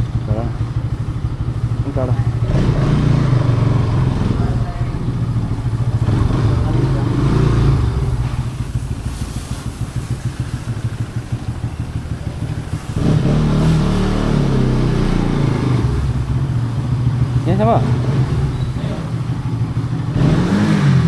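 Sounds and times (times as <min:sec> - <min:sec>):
motorcycle engine rumbling: 0:00.0 - 0:21.0.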